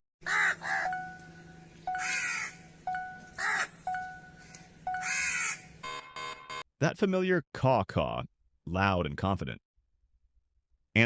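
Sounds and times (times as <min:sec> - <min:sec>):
crow cawing: 0:00.2 - 0:01.0, 0:01.9 - 0:02.7, 0:03.4 - 0:03.8, 0:05.0 - 0:05.7.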